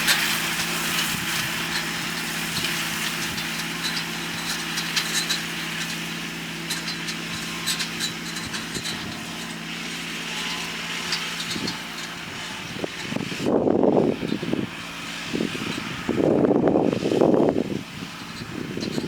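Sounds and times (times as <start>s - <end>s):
light clicks and rattles: 0.0s - 13.3s, 18.1s - 19.0s
tractor diesel engine running: 0.0s - 19.0s.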